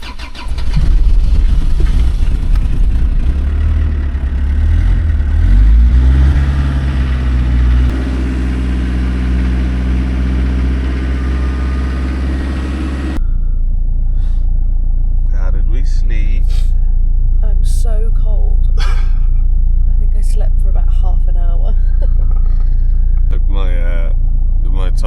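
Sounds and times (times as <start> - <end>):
van engine idling: 0.0 - 25.0.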